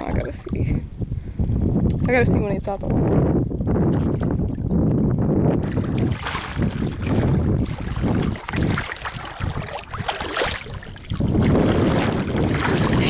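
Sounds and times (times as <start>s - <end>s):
wind buffeting microphone: 0.0s - 13.0s
water sloshing against kayak: 3.7s - 13.0s.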